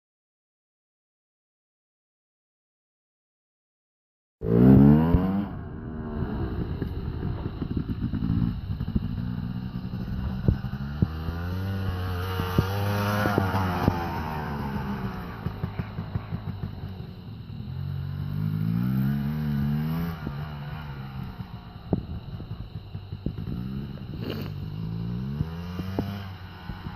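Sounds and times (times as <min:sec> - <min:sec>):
dirt bike engine revving: 0:04.4 - 0:26.9.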